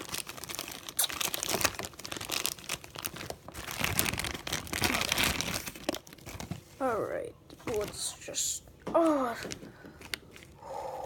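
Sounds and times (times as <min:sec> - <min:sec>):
packaging crinkling: 0:00.0 - 0:06.8.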